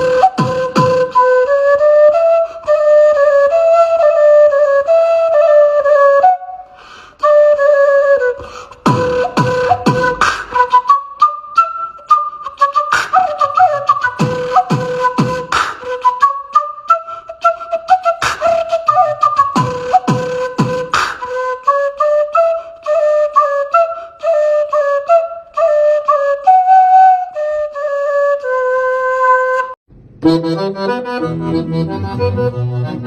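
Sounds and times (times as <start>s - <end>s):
busy percussion: 0.0s - 1.2s, 8.8s - 10.7s, 12.9s - 16.0s, 18.2s - 21.3s
flute-like woodwind melody: 0.0s - 33.0s.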